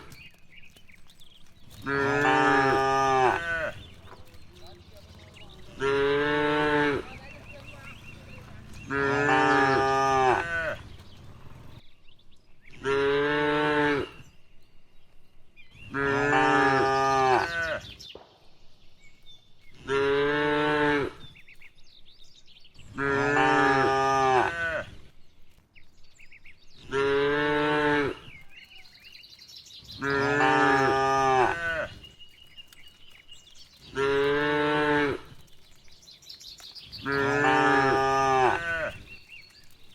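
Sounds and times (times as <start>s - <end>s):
cattle mooing: 1.8s - 3.8s, 5.5s - 10.9s, 15.9s - 17.9s, 23.0s - 24.9s, 30.0s - 31.9s, 34.0s - 35.3s, 37.1s - 39.0s.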